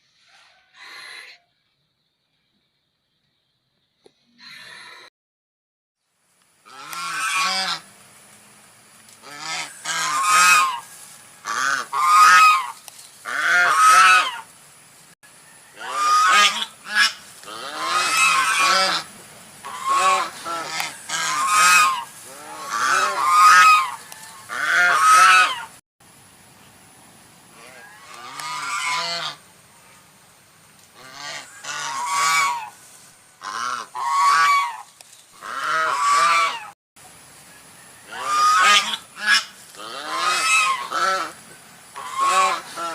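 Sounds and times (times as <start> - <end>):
waterfowl honking: 6.7 - 7.9, 9.2 - 14.5, 15.8 - 25.7, 27.6 - 29.4, 31.0 - 32.8, 33.4 - 36.7, 38.1 - 41.4, 42.0 - 42.9.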